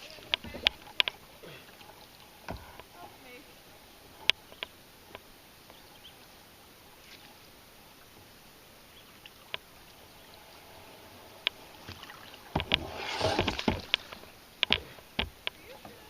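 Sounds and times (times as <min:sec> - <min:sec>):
paddle knocking against kayak: 0:00.0 - 0:03.0, 0:11.4 - 0:16.0
faint clicks: 0:00.0 - 0:03.3, 0:04.0 - 0:06.3, 0:09.0 - 0:16.0
paddle splashing water: 0:00.0 - 0:16.0.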